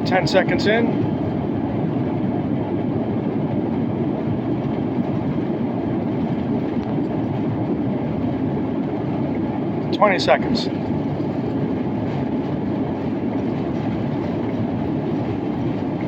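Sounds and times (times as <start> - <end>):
jet engines roaring: 0.0 - 16.0
wheels rumbling on runway: 0.0 - 16.0.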